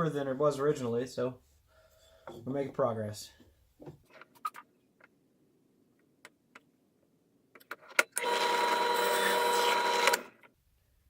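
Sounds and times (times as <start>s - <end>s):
drill press motor whining: 8.2s - 10.4s.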